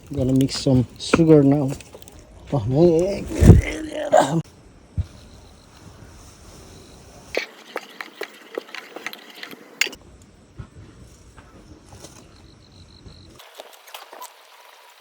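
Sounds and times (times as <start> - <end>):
spoon clinking and scraping a pot: 7.4 - 10.0.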